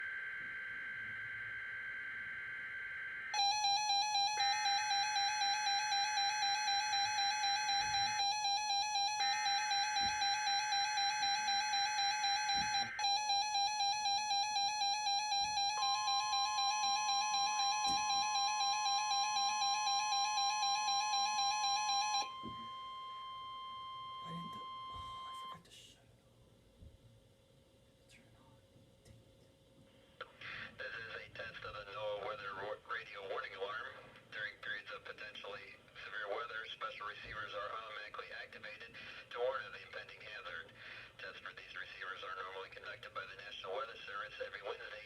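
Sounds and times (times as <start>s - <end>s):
steady alert tone: 3.4s - 23.1s
alert alarm beeping: 3.4s - 25.5s.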